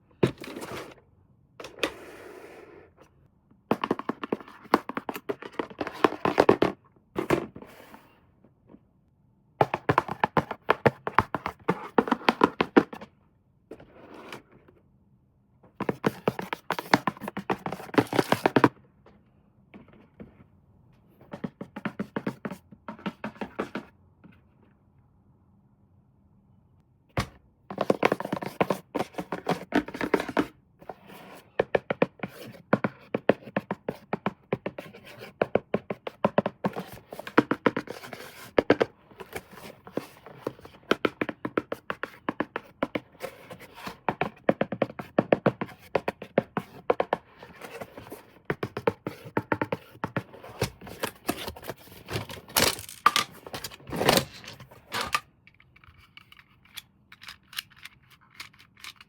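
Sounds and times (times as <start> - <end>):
toy packaging crackling: 52.4 - 55.2.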